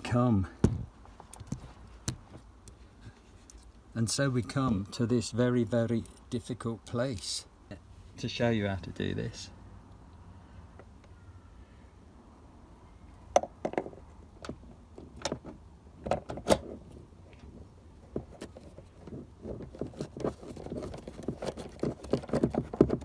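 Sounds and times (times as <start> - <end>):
small clicks and rattles: 18.2 - 23.0.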